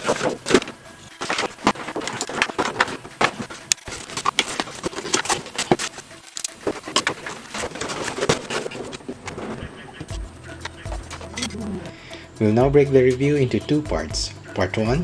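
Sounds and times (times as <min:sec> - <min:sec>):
packaging crinkling and clicking: 0:00.0 - 0:09.6.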